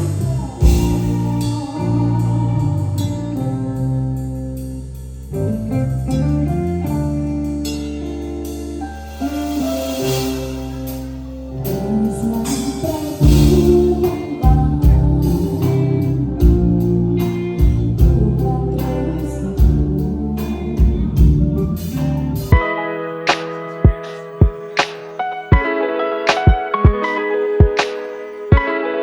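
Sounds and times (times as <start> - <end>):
drums: 0.0 - 3.5, 7.6 - 28.6
woman singing: 0.0 - 4.2, 11.6 - 21.8
bass: 0.0 - 22.6
guitar: 0.0 - 29.0
keyboard: 0.0 - 29.0.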